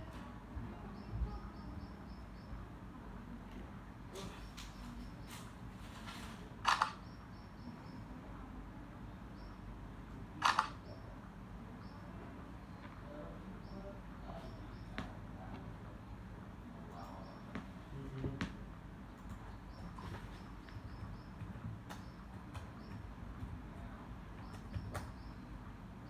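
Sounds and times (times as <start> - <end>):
low steady hum: 6.6 - 26.0.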